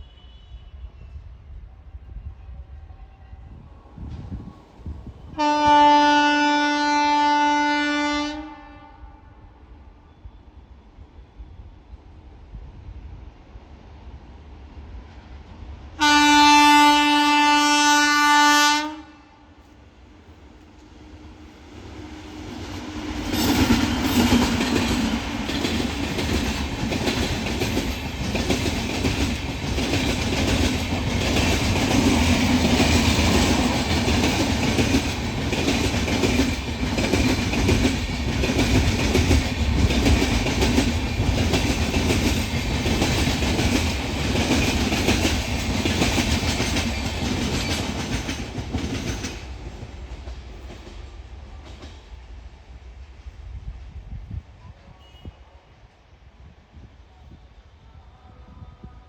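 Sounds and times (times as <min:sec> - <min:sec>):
shrill locomotive horn: 0:00.0 - 0:01.0, 0:05.4 - 0:10.7, 0:16.0 - 0:19.5, 0:54.9 - 0:55.8
train wheels clattering over rail joints: 0:22.8 - 0:52.1.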